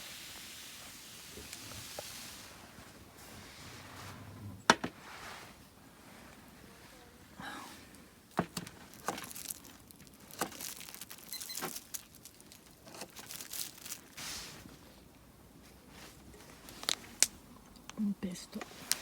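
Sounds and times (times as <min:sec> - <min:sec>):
food packaging crinkling: 0:08.4 - 0:14.8, 0:16.1 - 0:18.0.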